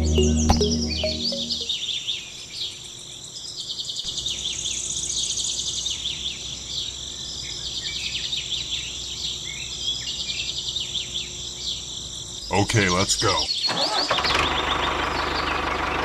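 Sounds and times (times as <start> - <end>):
rapid buzzy trill: 0.0 - 1.7
birds chirping: 0.0 - 1.8, 4.0 - 13.7.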